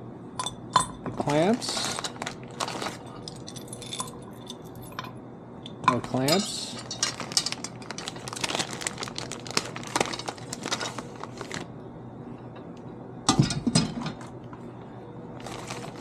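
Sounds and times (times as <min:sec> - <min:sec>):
plastic packaging crinkling: 0:01.2 - 0:04.0, 0:06.7 - 0:11.7, 0:15.4 - 0:16.0.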